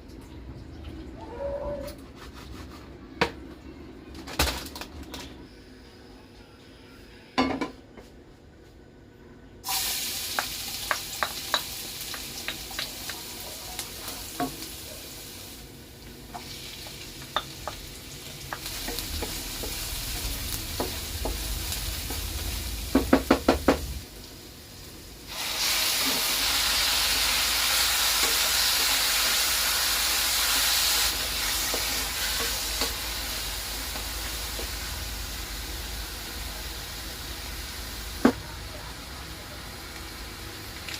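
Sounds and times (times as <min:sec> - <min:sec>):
food sizzling in a pan: 0:09.6 - 0:40.9
spatula tapping on a pan: 0:10.4 - 0:13.2, 0:16.8 - 0:17.9.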